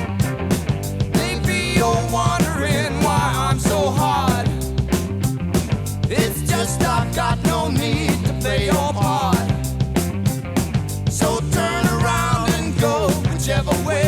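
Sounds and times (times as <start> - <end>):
rock band playing: 0.0 - 14.0
person singing: 1.1 - 4.7, 6.1 - 9.6, 11.2 - 14.0.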